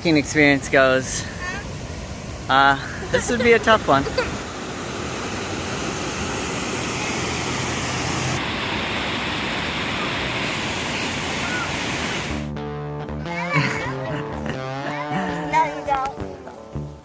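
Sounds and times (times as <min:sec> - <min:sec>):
white water rushing: 0:00.0 - 0:12.5.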